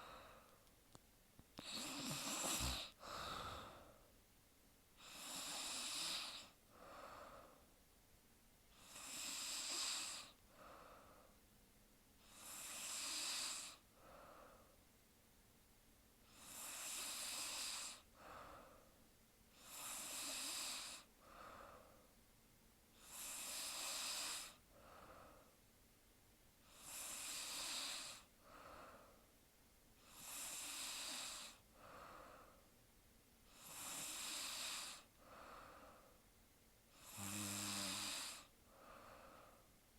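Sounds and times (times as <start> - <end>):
woman snoring: 1.6 - 3.9, 5.0 - 7.4, 8.8 - 10.4, 12.2 - 13.8, 16.3 - 18.1, 19.6 - 21.1, 23.0 - 24.6, 26.7 - 28.3, 30.0 - 31.6, 33.5 - 35.5, 37.0 - 38.5.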